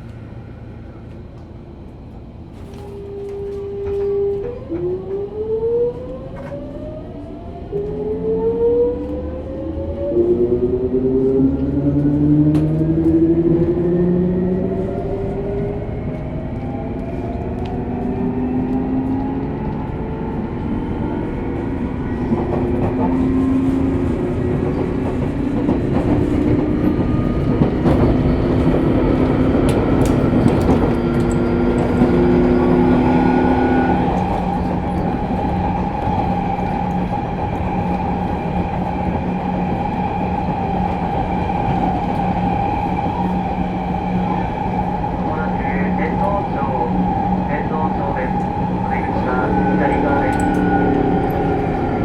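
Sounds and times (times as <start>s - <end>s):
wheel and track rumble: 8.9s - 52.0s
sharp clicks from rails: 24.8s - 32.2s.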